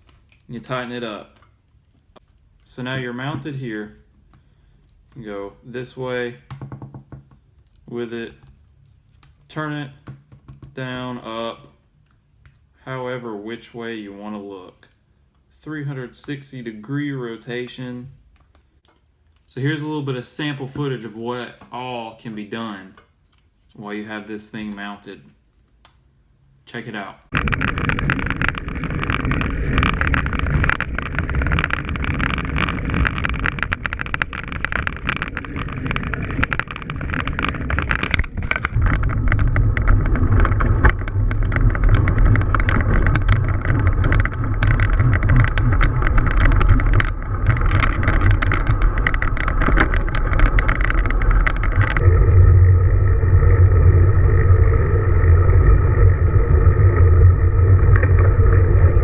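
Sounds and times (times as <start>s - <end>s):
bike clicks and rattles: 27.3s - 52.2s
humming tone: 27.3s - 59.0s
wind buffeting microphone: 37.3s - 59.0s
road noise: 38.7s - 59.0s.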